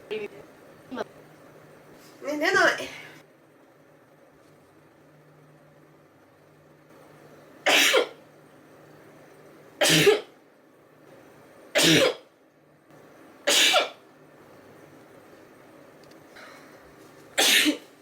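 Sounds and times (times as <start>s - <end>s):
woman sneezing: 13.5s - 14.0s, 17.4s - 17.8s.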